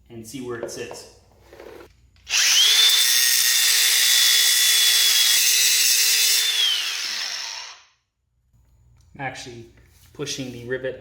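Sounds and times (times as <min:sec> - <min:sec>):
power grinder grinding steel: 0:02.3 - 0:07.8.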